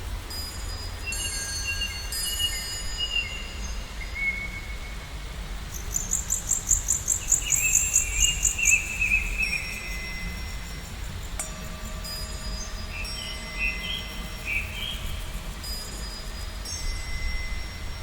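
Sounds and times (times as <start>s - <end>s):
thin ringing chime tones: 9.2s - 18.0s.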